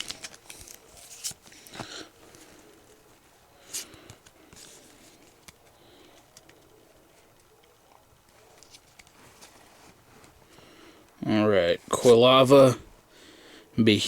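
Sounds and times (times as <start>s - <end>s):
trading cards being handled: 0.0s - 10.4s.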